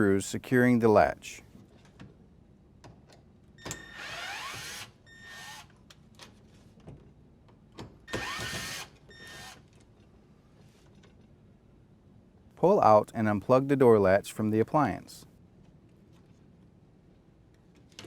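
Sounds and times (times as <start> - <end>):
drill driver motor whine: 3.7 - 5.7, 8.1 - 9.6.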